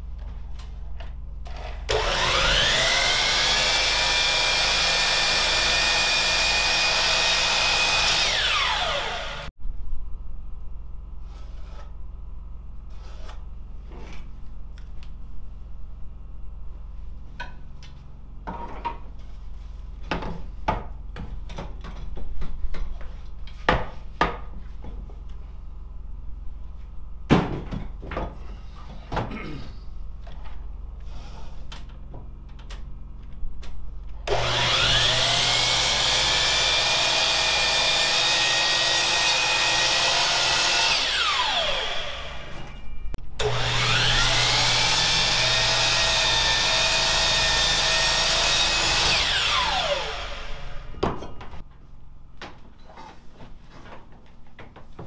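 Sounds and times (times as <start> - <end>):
electric power saw running: 1.5 - 9.5, 34.3 - 51.0.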